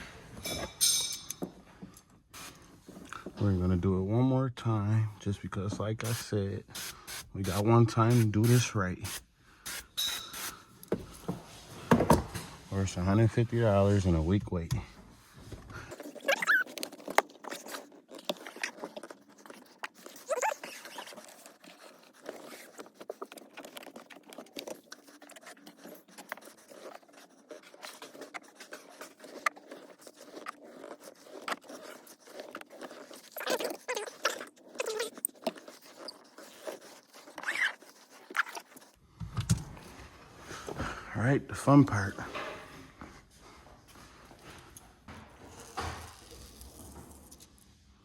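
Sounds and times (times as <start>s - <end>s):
glass squeaks: 16.2s - 16.8s, 33.3s - 35.3s, 37.4s - 37.8s.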